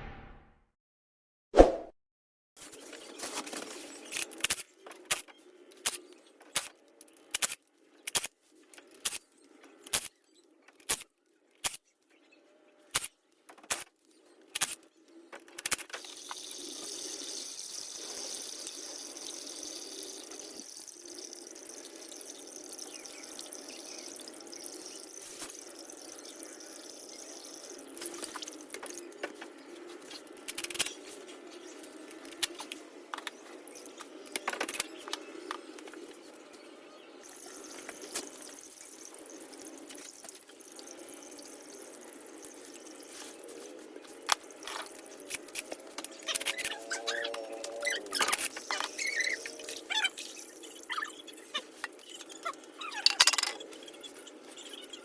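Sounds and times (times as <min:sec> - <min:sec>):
fluid draining: 0:16.0 - 0:30.5, 0:37.2 - 0:54.8.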